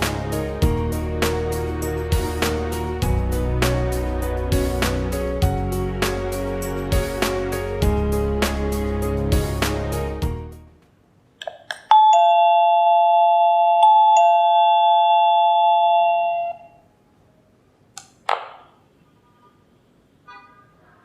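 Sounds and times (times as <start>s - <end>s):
two-note doorbell chime: 11.9s - 16.8s, 20.3s - 20.8s.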